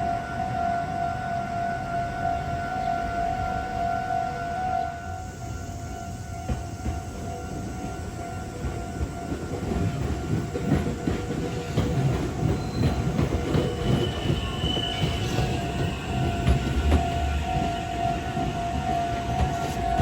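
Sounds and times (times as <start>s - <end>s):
level crossing warning bell: 0.0s - 20.0s
train wheel squeal: 2.1s - 20.0s
train wheels knocking over rail joints: 6.4s - 20.0s.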